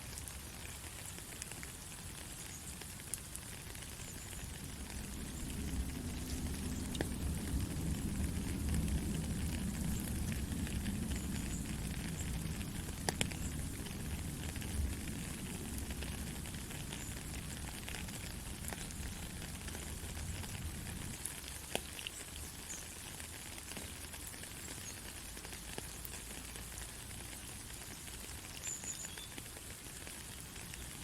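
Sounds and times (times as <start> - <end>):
steady rain hiss: 0.0 - 31.0
low rumble: 4.6 - 21.0.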